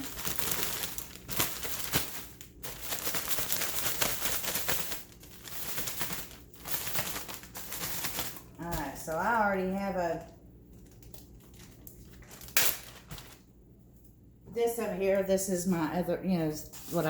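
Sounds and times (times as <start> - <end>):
plastic bag crinkling: 0.0 - 13.5.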